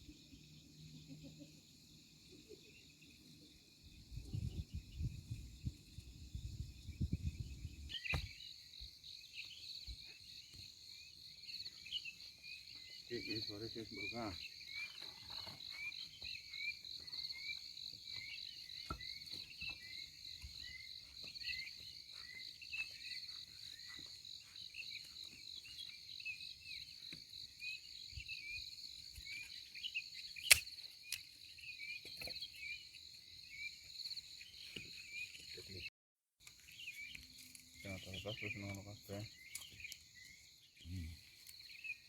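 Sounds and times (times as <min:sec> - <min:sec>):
crickets trilling: 0:00.0 - 0:35.9, 0:36.5 - 0:42.0
high insect chirps: 0:00.0 - 0:42.0.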